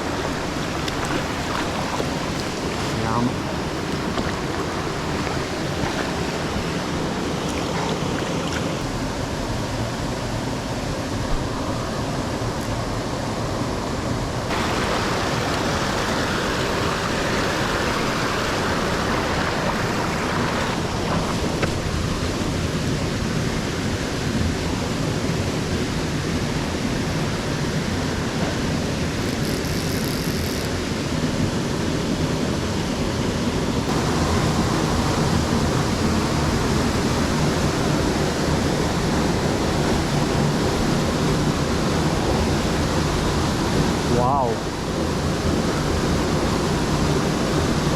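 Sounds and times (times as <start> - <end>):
fast-flowing stream rushing: 0.0 - 29.2, 33.7 - 47.9.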